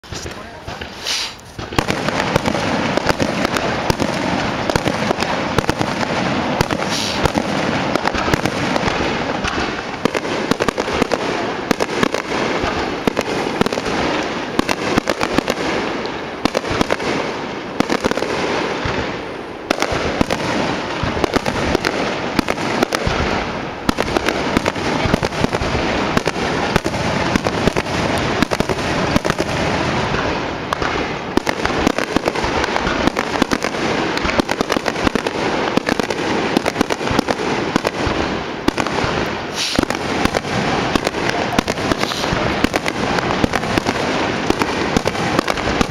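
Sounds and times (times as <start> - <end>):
fireworks bangs and crackling: 0.0 - 45.9.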